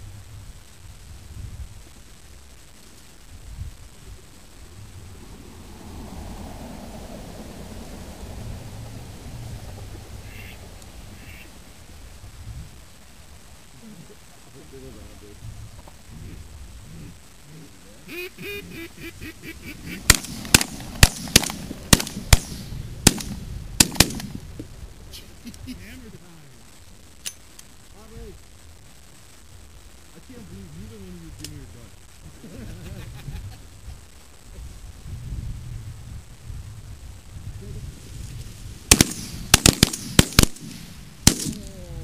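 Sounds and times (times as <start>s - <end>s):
shotgun shots: 19.9s - 24.4s, 38.9s - 41.7s.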